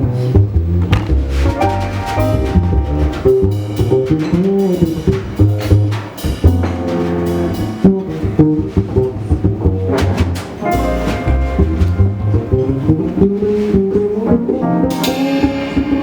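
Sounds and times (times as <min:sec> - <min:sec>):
walking double bass: 0:00.0 - 0:16.0
drum kit with cymbals: 0:00.9 - 0:09.3, 0:10.0 - 0:12.3, 0:14.9 - 0:16.0.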